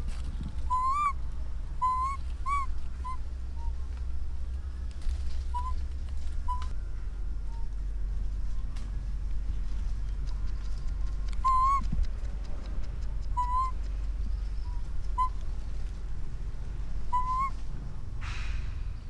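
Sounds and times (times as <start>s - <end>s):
low rumble: 0.0s - 19.0s
baby monkey coo calls: 0.7s - 1.2s, 1.8s - 3.8s, 5.5s - 5.8s, 6.4s - 6.7s, 10.9s - 12.0s, 13.3s - 13.9s, 14.6s - 15.4s, 17.0s - 17.6s.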